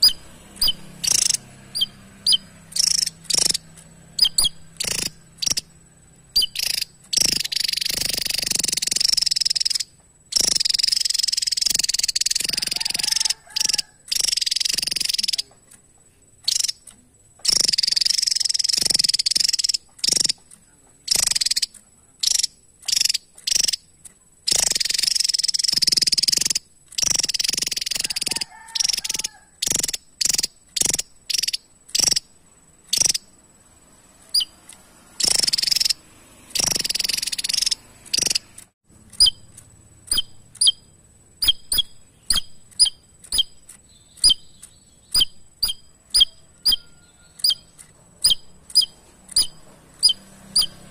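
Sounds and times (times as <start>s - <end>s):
bird singing rapid high song: 0.0s - 15.7s, 16.4s - 33.4s, 34.2s - 50.9s.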